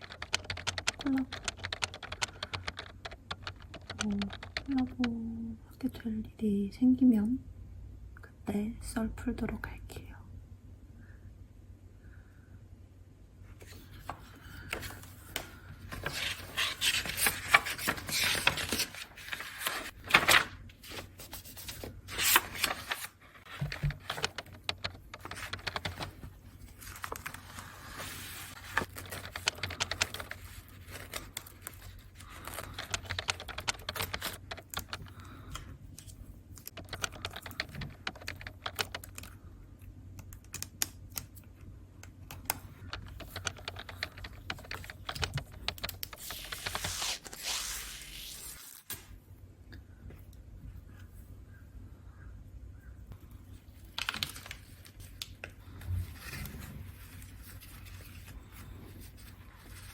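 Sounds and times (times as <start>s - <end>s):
paper scraping and rustling: 13.6s - 35.0s, 43.0s - 49.0s, 54.0s - 59.9s.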